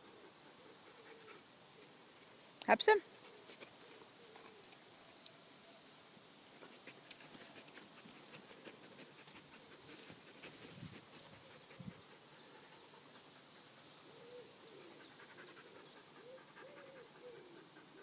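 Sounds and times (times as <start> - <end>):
rustling: 6.5 - 11.9.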